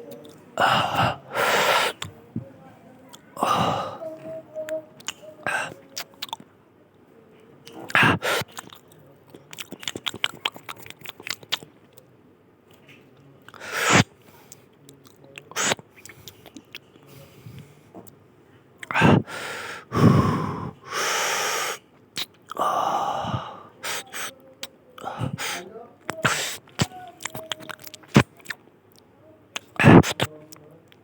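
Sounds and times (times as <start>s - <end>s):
loud mouth sounds: 0.2s - 2.2s, 3.4s - 6.4s, 7.7s - 8.8s, 13.5s - 14.2s, 15.5s - 16.6s, 18.8s - 28.6s, 29.6s - 30.3s
person chewing food: 4.6s - 6.5s, 7.6s - 12.0s, 12.7s - 18.2s, 22.0s - 25.4s, 26.1s - 30.3s.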